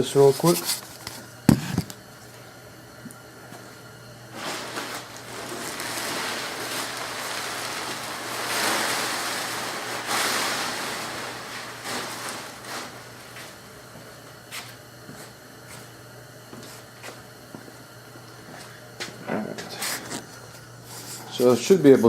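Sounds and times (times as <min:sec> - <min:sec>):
fabric cover rustling and swishing: 0:04.3 - 0:13.7.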